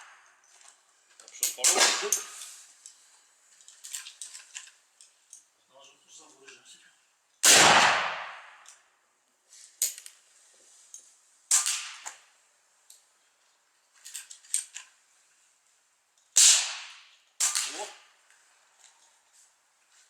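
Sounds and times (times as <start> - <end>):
revolver gunshots: 1.5 - 2.3, 7.4 - 8.6, 16.4 - 18.0
small cracks: 16.4 - 20.0.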